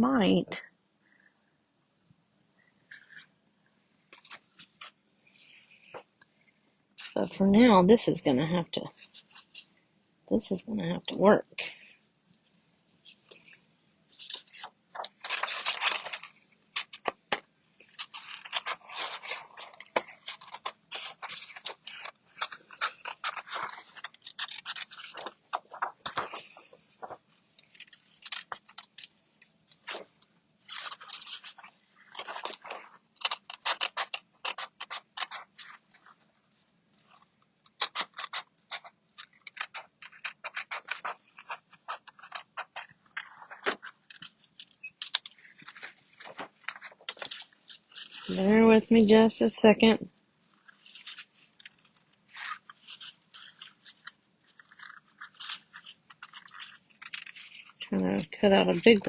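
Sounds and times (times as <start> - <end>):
paper rustling: 8.6 - 9.8, 11.6 - 59.0
scissors snipping paper: 13.2 - 36.3, 37.0 - 59.0.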